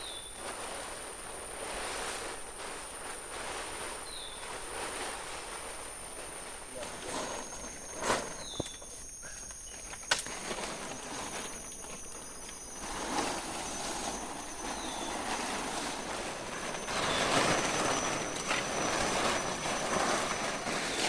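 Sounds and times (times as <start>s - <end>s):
high thin insect drone: 0.0s - 21.0s
steady rushing noise: 10.9s - 21.0s.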